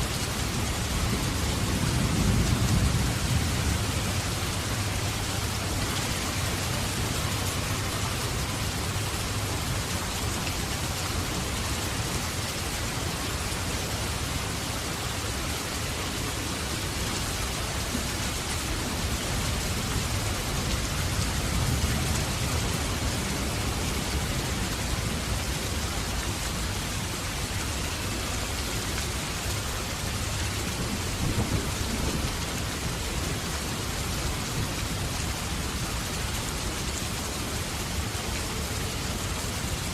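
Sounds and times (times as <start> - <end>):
heavy rain falling: 0.0 - 39.9
low rolling thunder: 0.7 - 8.0, 30.6 - 33.5.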